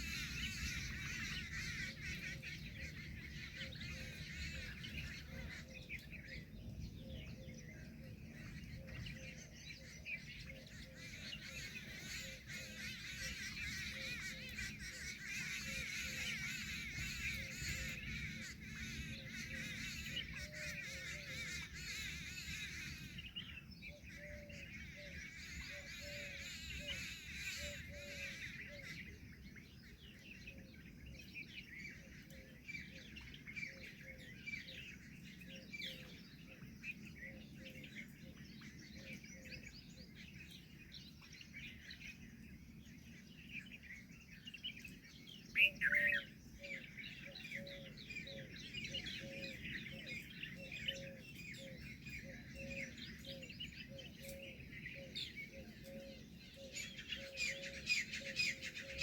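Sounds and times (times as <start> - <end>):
small birds chirping: 0.0 - 59.0
loud bird call: 10.8 - 29.2.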